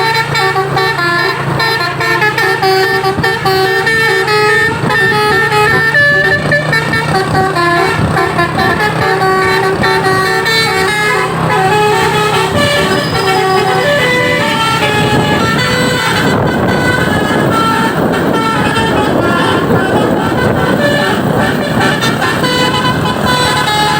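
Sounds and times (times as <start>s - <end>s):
musical air horn playing a tune: 0.0s - 23.9s
truck engine running: 0.0s - 23.9s.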